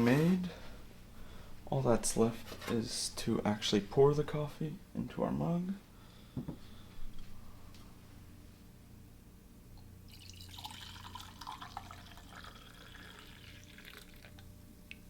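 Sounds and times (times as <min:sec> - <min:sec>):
coffee pouring into a mug: 0:10.1 - 0:14.5.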